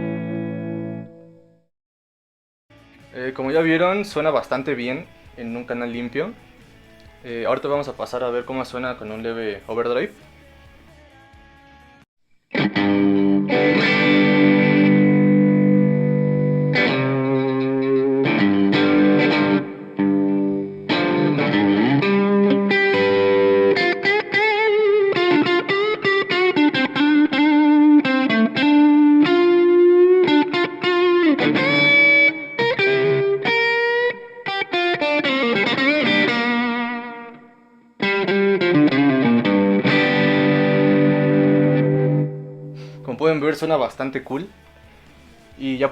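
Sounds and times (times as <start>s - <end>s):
overdriven electric guitar: 0.0s - 1.6s, 12.5s - 43.1s.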